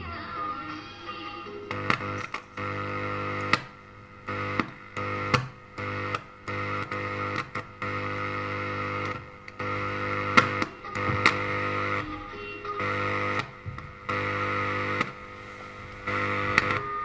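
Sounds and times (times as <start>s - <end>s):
loudspeaker buzzing hum: 0.0s - 17.0s
clicks: 10.3s - 12.1s, 14.9s - 15.2s, 15.9s - 17.0s.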